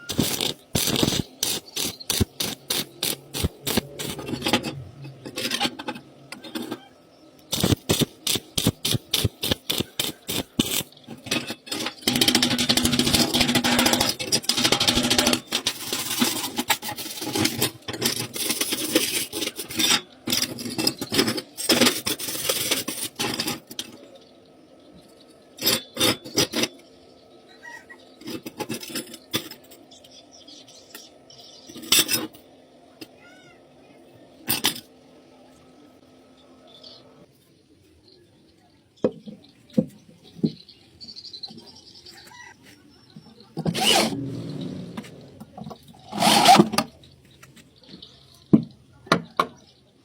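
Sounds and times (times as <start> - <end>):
arc welding crackling: 0.0 - 4.8, 7.4 - 11.0, 11.7 - 19.6.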